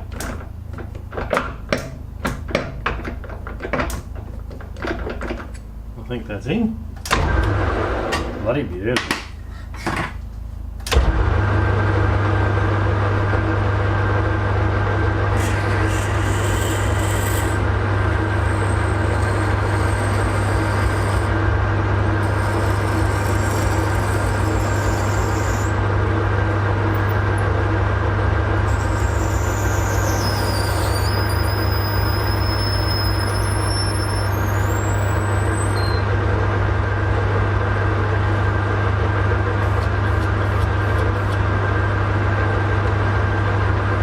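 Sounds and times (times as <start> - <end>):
lathe motor hum: 11.0 - 44.0
high-pitched cutting whine: 22.2 - 25.9, 28.6 - 36.1.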